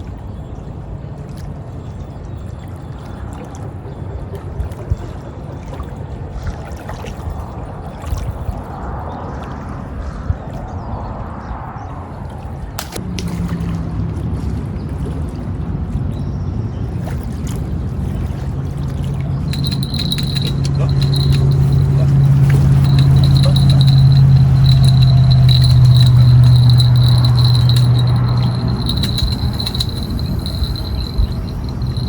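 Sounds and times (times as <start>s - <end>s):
boat motor humming: 18.9s - 32.0s.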